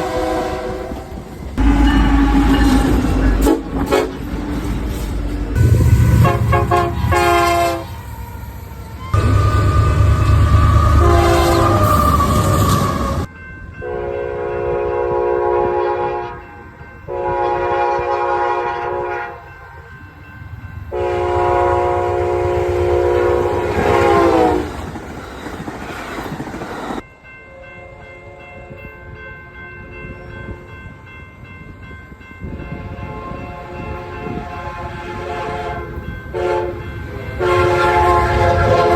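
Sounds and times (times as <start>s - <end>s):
locomotive air horns: 0.0s - 4.5s, 5.6s - 8.0s, 9.0s - 19.5s, 20.9s - 24.8s, 33.5s - 38.9s
heavy train rumble: 0.0s - 38.9s.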